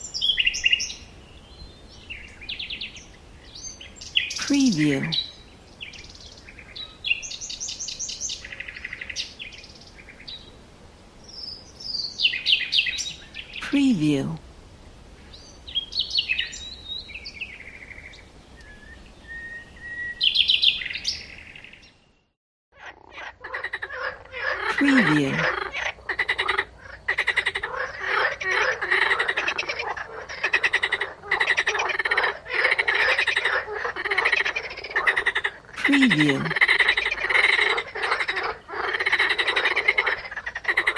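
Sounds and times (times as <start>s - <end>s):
songbirds singing: 0.0s - 10.6s, 11.2s - 13.6s, 15.2s - 22.3s
frogs croaking: 22.8s - 40.9s.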